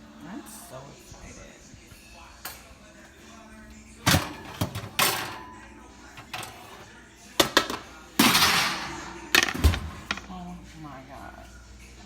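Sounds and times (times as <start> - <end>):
objects knocking and scraping: 6.2 - 10.3.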